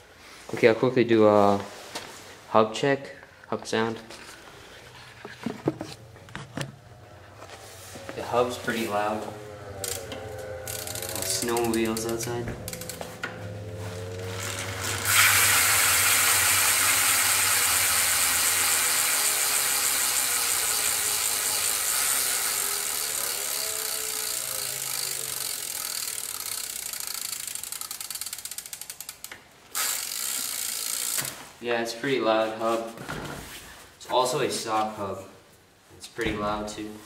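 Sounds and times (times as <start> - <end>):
bicycle freewheel pawls clicking: 9.4 - 31.4.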